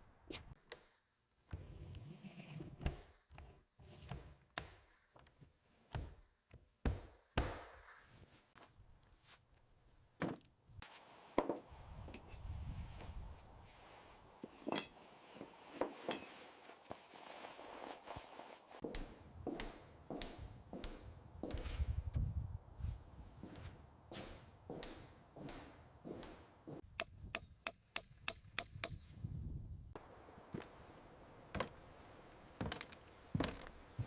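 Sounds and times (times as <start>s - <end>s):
hand tools striking timber: 26.9s - 29.0s.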